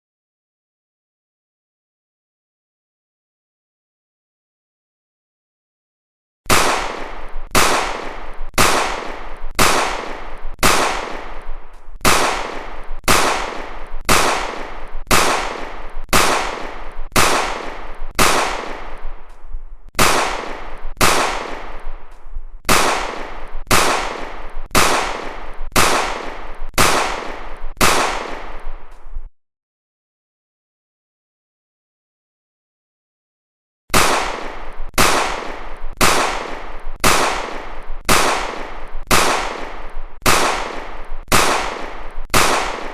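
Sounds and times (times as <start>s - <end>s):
pistol shots echoing: 6.5s - 29.0s, 33.9s - 42.9s.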